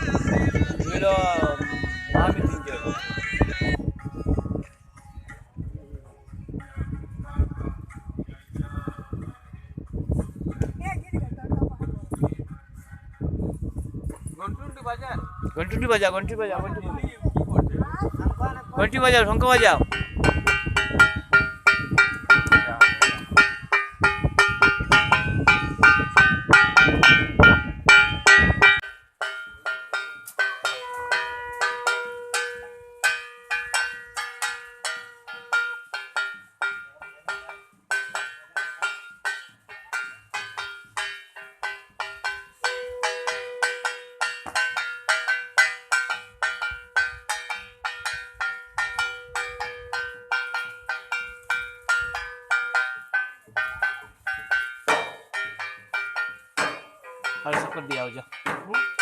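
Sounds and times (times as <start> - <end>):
hand bell ringing rapidly: 19.8 - 59.0
conch shell blown: 30.7 - 33.6, 42.6 - 44.2.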